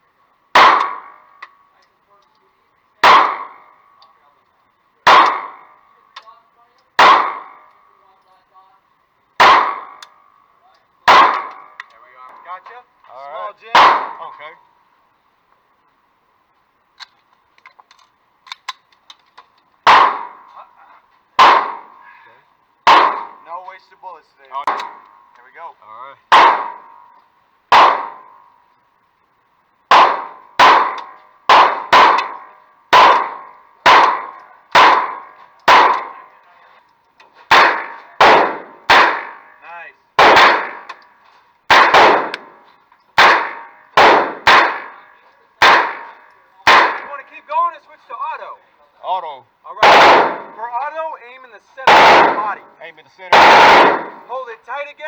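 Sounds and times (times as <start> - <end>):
gunshots with ringing echo: 0.5 - 1.4, 3.0 - 4.0, 5.0 - 6.0, 7.0 - 7.9, 9.4 - 10.4, 11.0 - 11.8, 13.6 - 14.3, 19.8 - 20.5, 21.4 - 22.0, 22.8 - 23.6, 24.6 - 25.3, 26.3 - 28.5, 29.9 - 36.4, 37.5 - 39.6, 40.2 - 41.0, 41.7 - 42.6, 43.2 - 47.4, 49.8 - 50.6, 51.8 - 54.4
metallic clicks of gun handling: 17.0 - 19.7.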